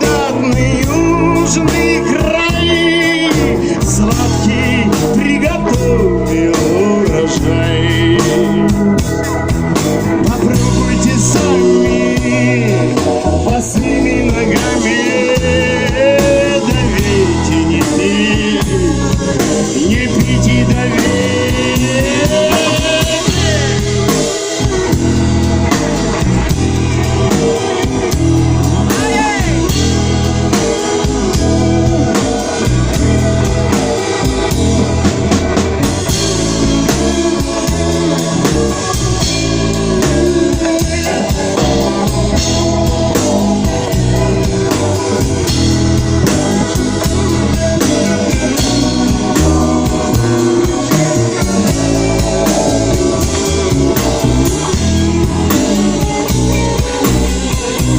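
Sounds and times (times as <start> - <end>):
live band instrumental music: 0.0 - 57.9.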